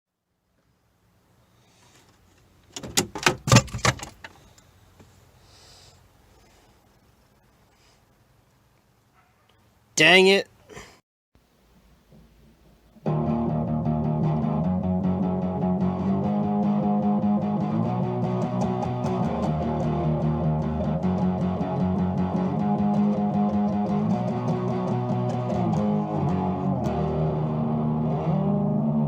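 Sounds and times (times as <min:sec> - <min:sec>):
guitar and bass music: 0:13.0 - 0:29.0.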